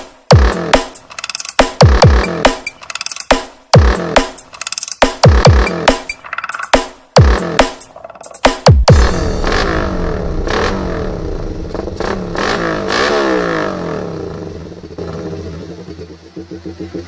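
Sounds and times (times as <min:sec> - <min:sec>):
motorcycle engine revving: 0:00.3 - 0:01.2, 0:01.8 - 0:02.7, 0:03.7 - 0:04.5, 0:05.1 - 0:06.3, 0:07.1 - 0:08.2, 0:08.9 - 0:17.0.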